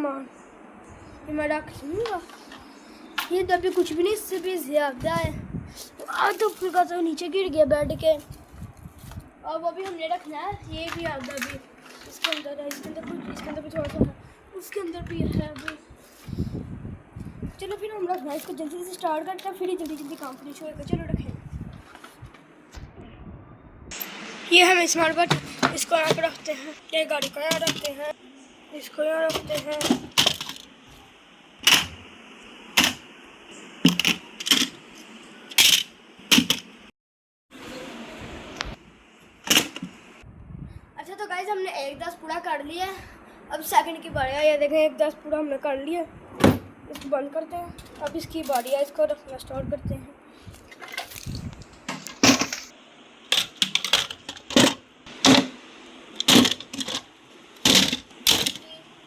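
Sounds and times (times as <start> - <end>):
toys knocking and clattering: 25.1 - 26.6, 27.2 - 28.0, 29.3 - 30.7, 31.7 - 32.0, 33.8 - 34.8, 35.5 - 36.7, 51.9 - 52.7, 53.3 - 55.6, 56.2 - 58.7
toys knocking into a drawer: 25.2 - 26.5, 27.2 - 28.0, 29.3 - 30.6, 56.2 - 57.0, 57.6 - 58.6.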